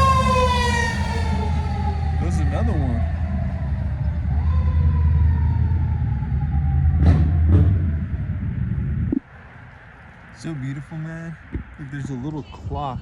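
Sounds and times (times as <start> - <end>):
siren sliding down: 0.0 - 8.5
fire truck engine rumble: 0.0 - 13.0.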